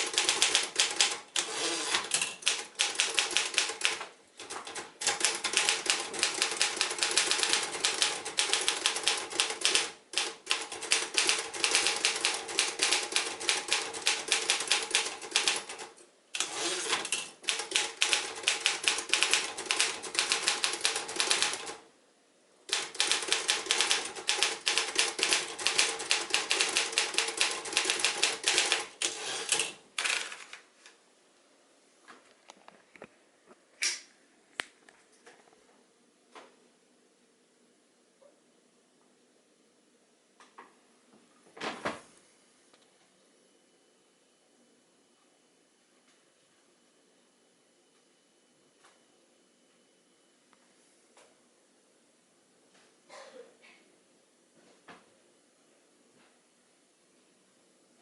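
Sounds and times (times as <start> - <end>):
manual typewriter typing: 0.0 - 21.8, 22.7 - 30.6.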